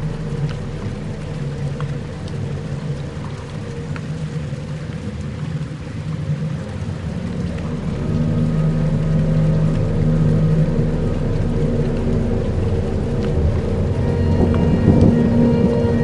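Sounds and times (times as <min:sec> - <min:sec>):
dark ambient droning music: 0:00.0 - 0:16.0.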